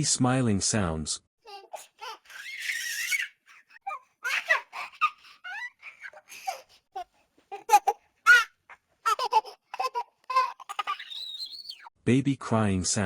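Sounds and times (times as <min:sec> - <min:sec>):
baby giggling and laughing: 0:01.4 - 0:11.9
breathy sound: 0:03.4 - 0:07.3.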